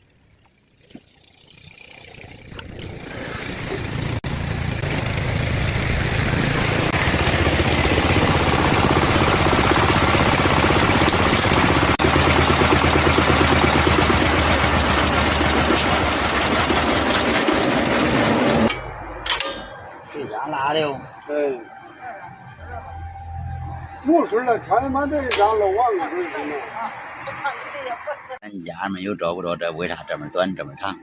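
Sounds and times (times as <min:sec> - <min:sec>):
engine running: 0:00.0 - 0:21.3.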